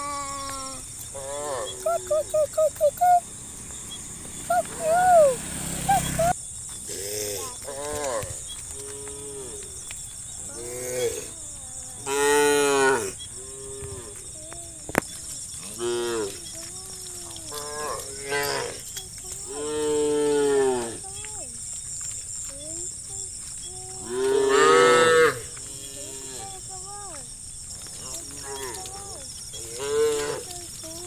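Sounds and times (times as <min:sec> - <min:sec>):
cattle mooing: 0:24.1 - 0:26.5.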